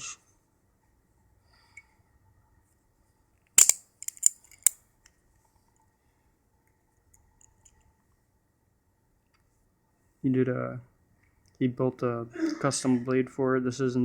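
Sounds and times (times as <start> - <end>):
butterfly knife metallic clicks: 3.6 - 4.8.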